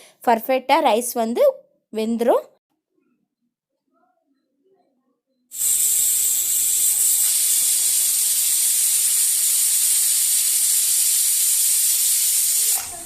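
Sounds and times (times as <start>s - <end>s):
pressure cooker whistle hissing: 5.5s - 13.0s.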